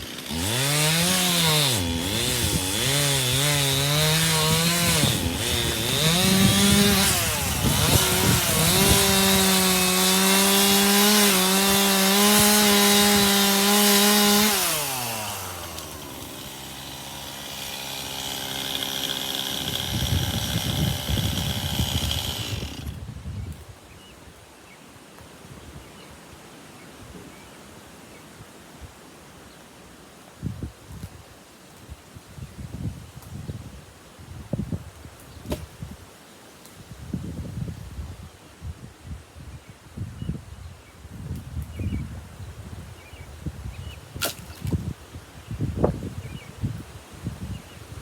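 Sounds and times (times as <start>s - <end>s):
chainsaw cutting wood: 0.0s - 23.1s, 44.2s - 44.9s.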